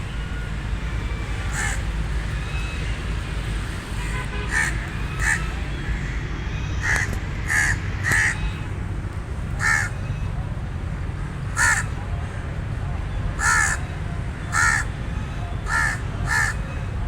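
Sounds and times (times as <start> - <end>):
raven cawing: 1.4 - 2.3, 4.5 - 6.2, 6.8 - 8.5, 9.6 - 10.0, 11.6 - 12.0, 13.4 - 13.9, 14.5 - 15.0, 15.7 - 16.6.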